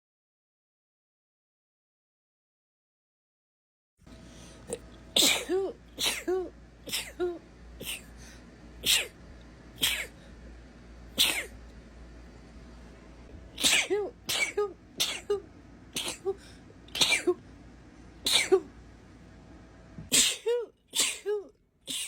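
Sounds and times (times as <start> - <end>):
woman sneezing: 5.2 - 8.1, 8.8 - 9.2, 9.8 - 10.2, 11.2 - 11.5, 13.6 - 15.4, 16.0 - 17.4, 18.3 - 18.7, 20.1 - 22.0.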